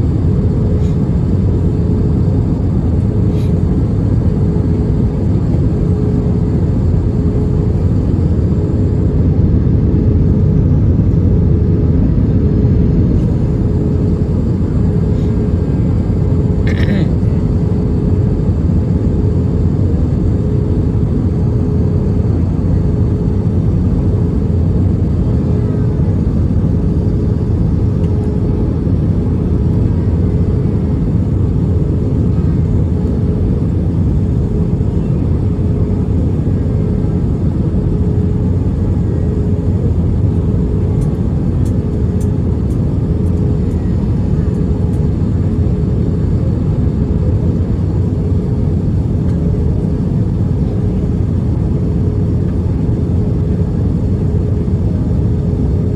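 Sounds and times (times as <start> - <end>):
aircraft engines and airflow roar: 0.0 - 55.9
steady hum: 0.0 - 55.9.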